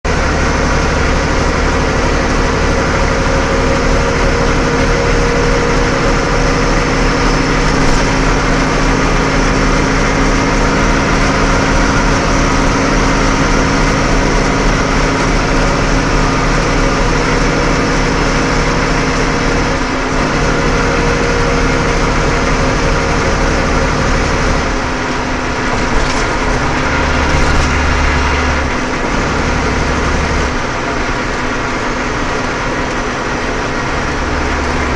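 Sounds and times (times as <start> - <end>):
truck driving at speed: 0.0 - 34.9.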